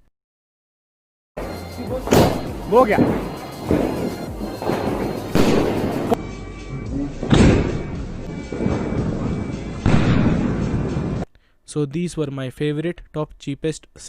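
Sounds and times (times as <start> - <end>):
firework booms: 2.0 - 6.2, 7.3 - 11.2.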